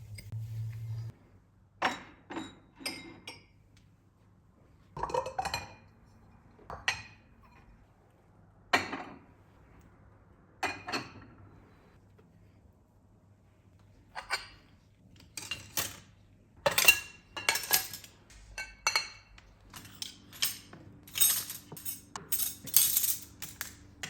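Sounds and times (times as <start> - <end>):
dishes and glassware clinking: 1.8 - 3.5, 16.6 - 23.8.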